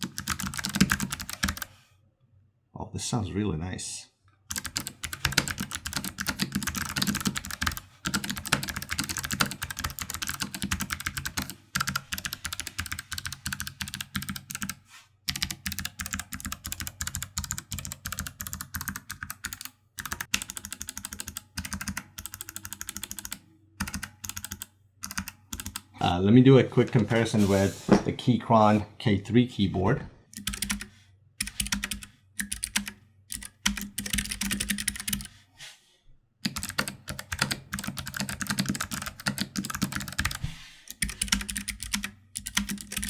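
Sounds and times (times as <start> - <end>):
mechanical keyboard typing: 0.0 - 1.7, 4.5 - 25.9, 30.4 - 35.3, 36.4 - 43.0.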